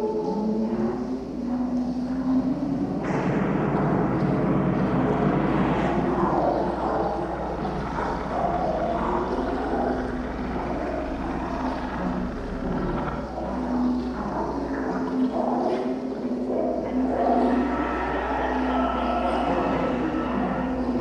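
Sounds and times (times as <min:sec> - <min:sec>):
loud dense rumble: 0:02.5 - 0:15.0.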